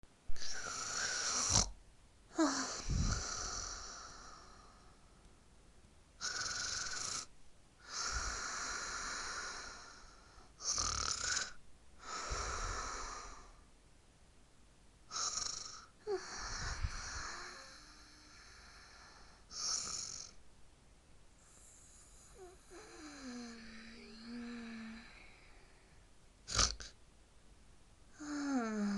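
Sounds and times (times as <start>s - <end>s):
cartoon character snoring: 0.4s - 1.8s, 2.4s - 4.7s, 6.2s - 10.0s, 10.6s - 13.5s, 15.1s - 18.8s, 19.5s - 20.4s, 21.7s - 25.4s, 26.5s - 27.0s, 28.2s - 28.9s.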